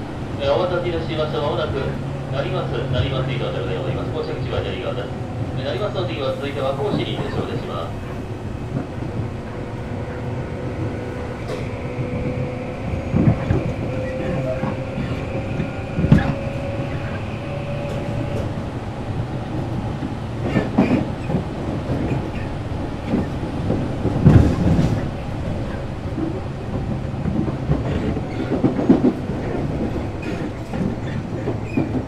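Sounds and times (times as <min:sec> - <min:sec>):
train wheels and motors rumbling: 0:00.0 - 0:32.0
wheels knocking on rail joints: 0:19.5 - 0:32.0.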